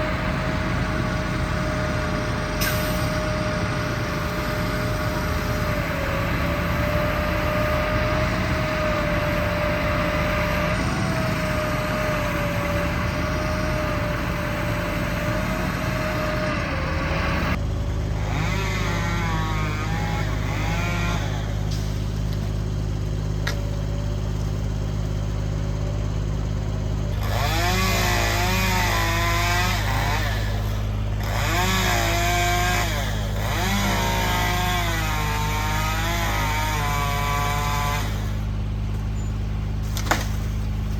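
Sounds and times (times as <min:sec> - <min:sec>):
low engine drone: 0:00.0 - 0:40.9
chainsaw revving: 0:03.1 - 0:21.8, 0:27.1 - 0:38.5.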